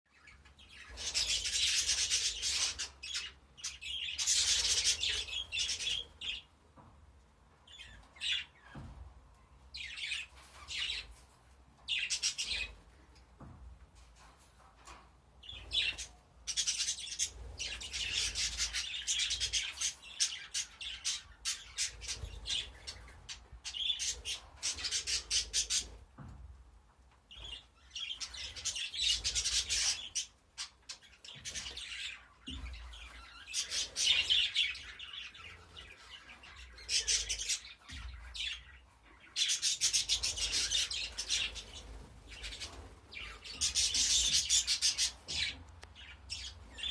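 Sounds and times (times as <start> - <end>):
budgerigars chattering and squawking: 0.2 - 6.4, 15.5 - 26.0, 27.4 - 46.9.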